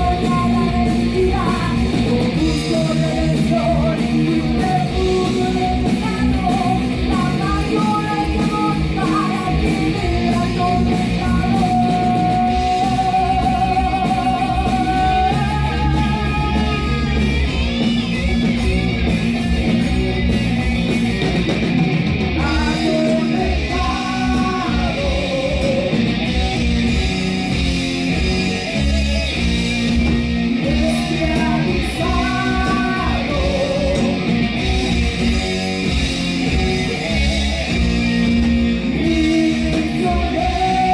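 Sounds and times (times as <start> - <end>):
person singing: 0.0 - 17.6, 22.4 - 26.2, 30.6 - 34.5, 38.9 - 40.9
heavy metal band playing: 0.0 - 40.9.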